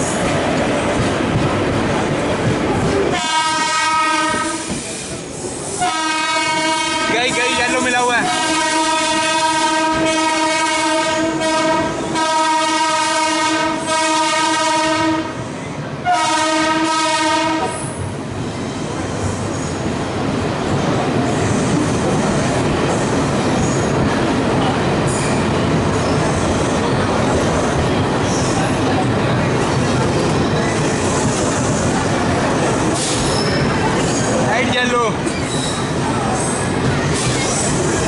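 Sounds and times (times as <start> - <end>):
train running rumble: 0.0 - 38.0
locomotive horn blast: 3.2 - 4.8, 5.8 - 15.4, 16.0 - 18.0
wheel clatter and squeal: 23.4 - 24.0, 25.1 - 27.0, 29.8 - 31.8, 33.0 - 34.5, 35.2 - 37.9.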